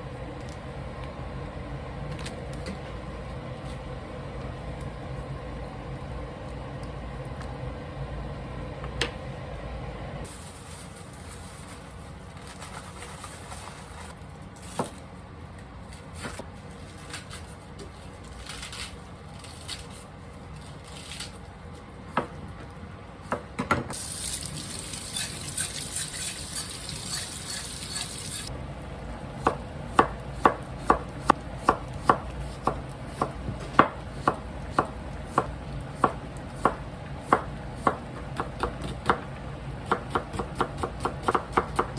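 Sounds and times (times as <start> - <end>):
running water: 24.0 - 28.5
knife chopping on cutting board: 29.4 - 41.9.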